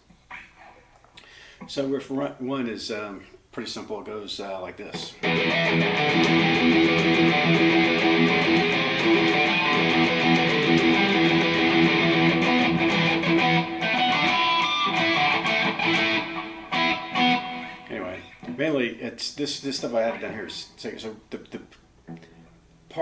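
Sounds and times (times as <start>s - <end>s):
electric guitar riff: 5.1s - 18.6s.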